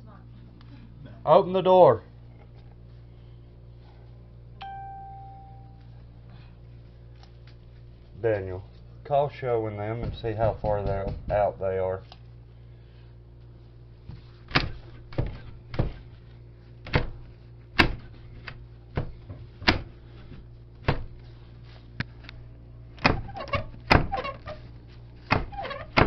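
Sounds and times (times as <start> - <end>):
steady low hum: 0.0 - 26.0
knocks and bangs on a door: 10.0 - 11.6.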